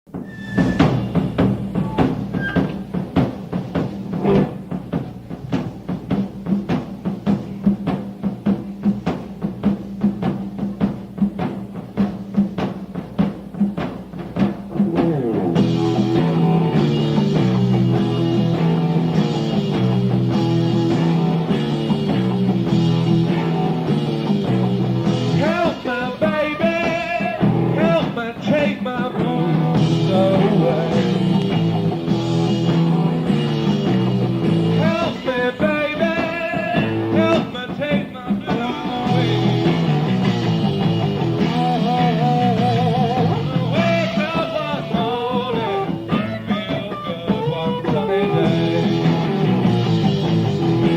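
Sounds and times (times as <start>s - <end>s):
bass and electric guitar riff: 3.9s - 5.0s, 14.8s - 50.9s
wavering lead guitar line: 14.8s - 50.9s.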